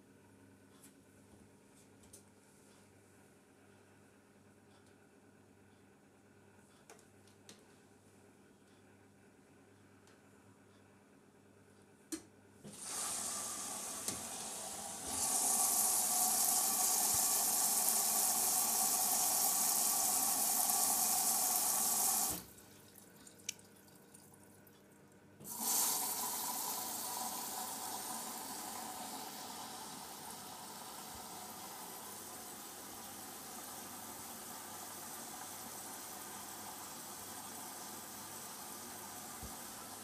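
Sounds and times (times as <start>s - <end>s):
washing machine filling with water: 12.7s - 24.5s, 25.4s - 40.0s.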